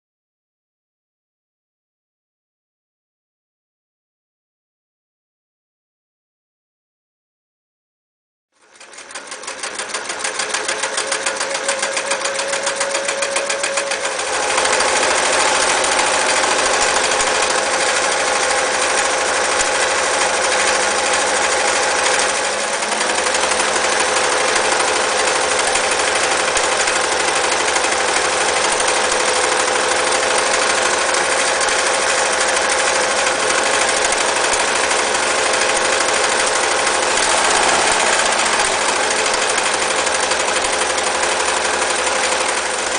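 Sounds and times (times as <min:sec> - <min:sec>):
electric sewing machine stitching: 0:08.6 - 0:42.9.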